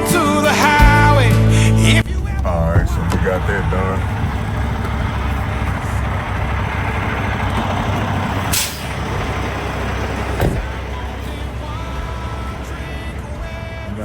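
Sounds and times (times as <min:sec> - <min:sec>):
diesel truck engine idling: 0:00.0 - 0:14.0
air brakes hiss: 0:04.0 - 0:13.2.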